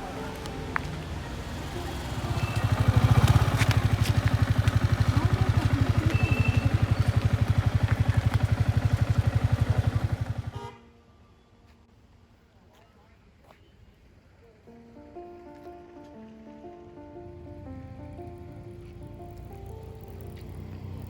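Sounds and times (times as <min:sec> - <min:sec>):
motorcycle engine running: 0:00.9 - 0:10.7, 0:18.0 - 0:21.0.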